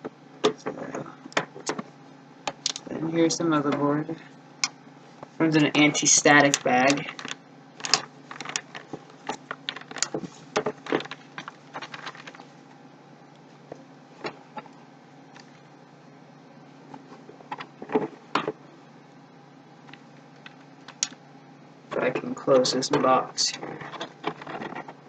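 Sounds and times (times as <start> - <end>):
plastic bag crinkling: 6.0 - 12.6.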